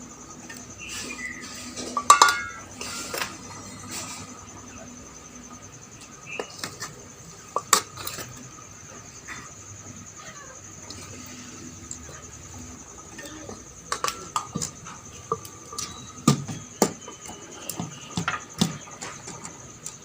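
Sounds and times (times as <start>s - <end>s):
metal parts clinking and knocking: 1.7s - 2.7s.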